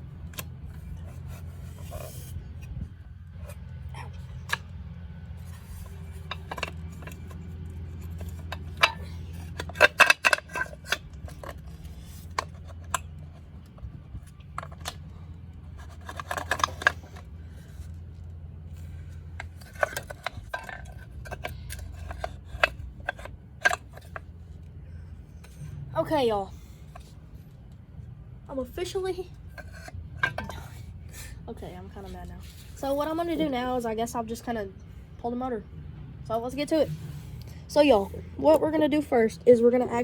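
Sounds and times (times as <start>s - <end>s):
steady low hum: 0.0s - 40.0s
metal tools clinking on metal: 5.4s - 13.1s, 29.6s - 30.8s.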